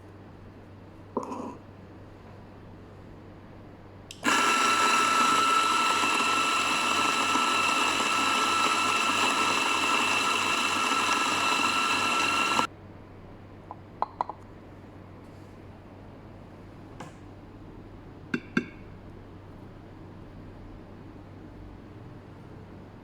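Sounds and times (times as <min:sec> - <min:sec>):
coffee grinder running: 0:04.1 - 0:12.7.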